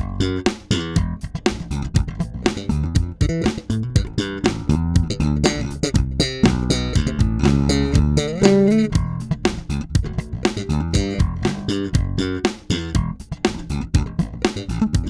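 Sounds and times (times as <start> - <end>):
electric bass guitar plucked notes: 0.0 - 15.0.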